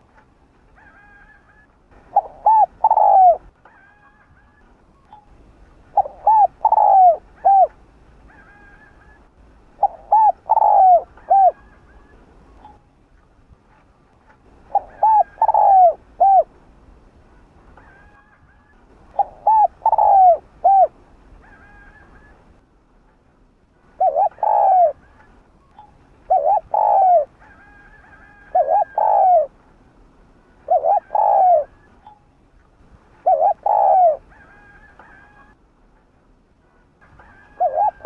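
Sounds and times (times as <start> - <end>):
dove cooing: 0.8 - 4.7, 5.9 - 12.8, 14.6 - 16.6, 17.8 - 22.4, 23.9 - 29.6, 30.6 - 32.2, 33.2 - 35.6, 37.1 - 38.0.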